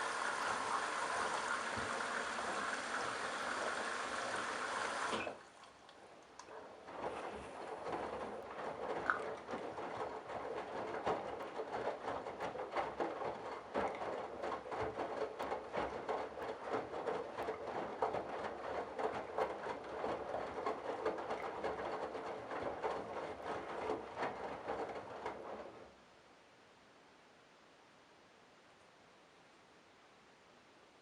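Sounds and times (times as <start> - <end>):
water splashing: 0.0 - 21.8
washing machine drum tumbling: 6.5 - 25.9.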